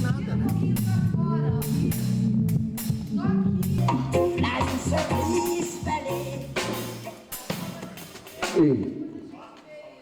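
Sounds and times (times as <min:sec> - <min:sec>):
held bass notes: 0:00.0 - 0:07.0
drum and cymbal hits: 0:00.0 - 0:08.8.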